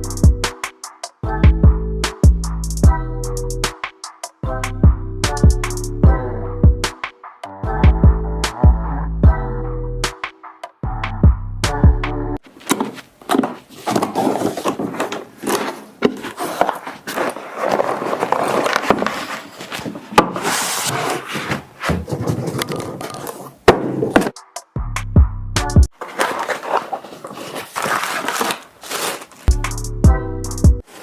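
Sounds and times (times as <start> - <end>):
packaging rustling and scraping: 12.4 - 24.4, 25.9 - 29.6.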